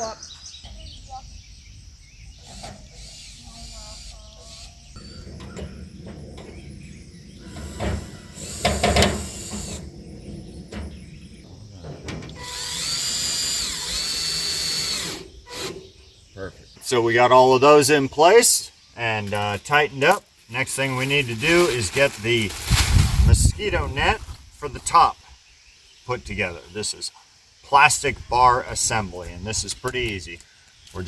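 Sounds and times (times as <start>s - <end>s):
parts knocking and clattering: 2.2s - 16.2s
screw gun motor whining: 2.4s - 5.6s, 7.4s - 10.0s, 12.3s - 16.0s.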